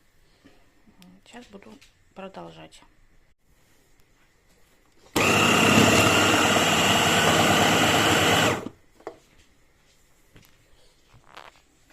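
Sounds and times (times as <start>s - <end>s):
electric blender whining: 5.1s - 8.8s.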